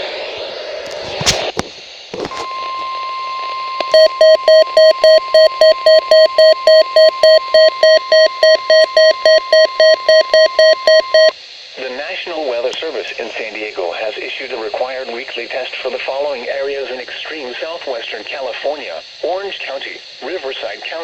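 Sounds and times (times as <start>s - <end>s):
alarm beeping: 2.3s - 11.3s.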